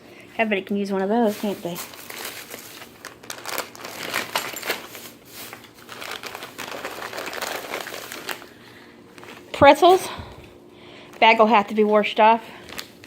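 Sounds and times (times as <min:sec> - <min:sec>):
plastic bags crinkling: 0:00.9 - 0:10.1, 0:11.0 - 0:13.0.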